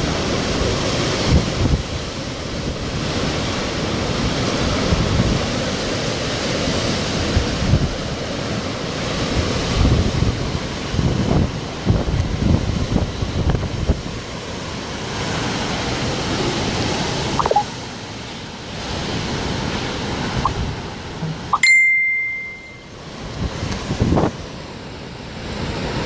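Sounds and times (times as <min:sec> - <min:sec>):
wind gusting against microphone: 0:00.0 - 0:06.1, 0:09.1 - 0:14.5, 0:23.1 - 0:24.6
high bell-like ding: 0:21.2 - 0:23.0.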